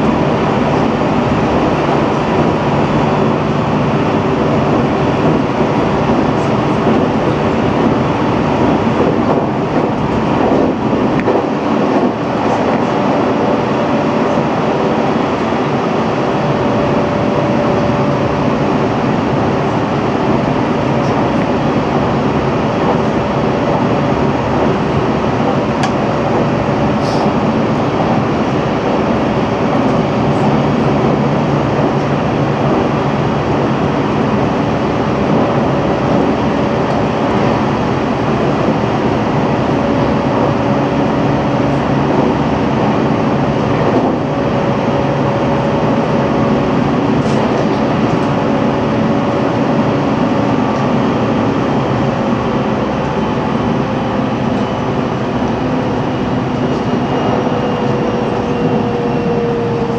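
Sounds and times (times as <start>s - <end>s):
electric train motors humming: 0.0s - 59.9s
train wheels rumbling: 0.0s - 59.9s.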